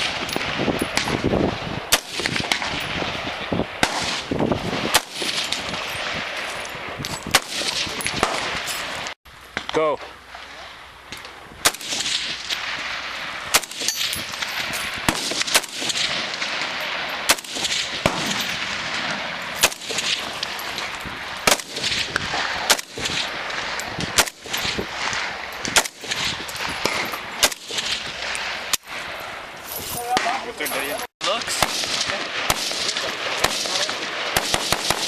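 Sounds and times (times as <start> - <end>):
gunshot echo: 1.9 - 3.1, 3.8 - 6.2, 7.3 - 8.7, 11.6 - 20.4, 21.4 - 28.5, 31.2 - 35.0
rifles fired rapidly: 1.9 - 9.0, 11.6 - 28.7, 31.2 - 35.0.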